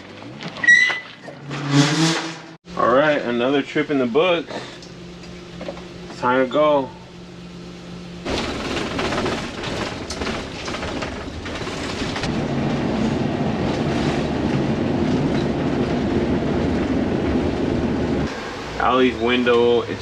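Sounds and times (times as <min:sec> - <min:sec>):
vehicle driving over rough ground: 0:08.2 - 0:20.0.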